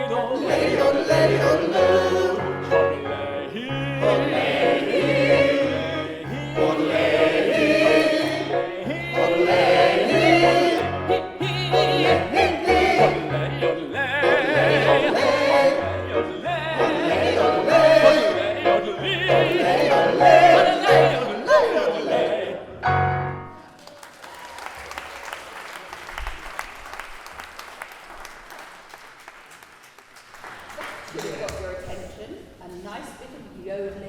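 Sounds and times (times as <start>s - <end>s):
group of voices singing: 0.0s - 23.0s.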